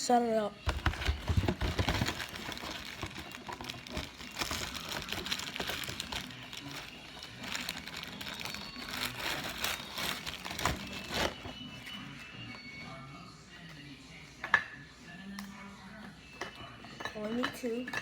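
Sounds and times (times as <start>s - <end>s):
packaging crinkling and rustling: 0.7s - 11.7s.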